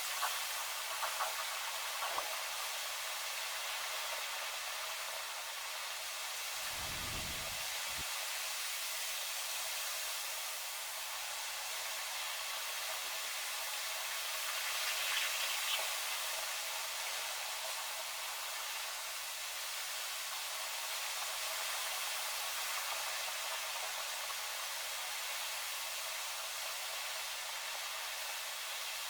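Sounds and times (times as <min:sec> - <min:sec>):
strong wind: 0:06.6 - 0:08.0.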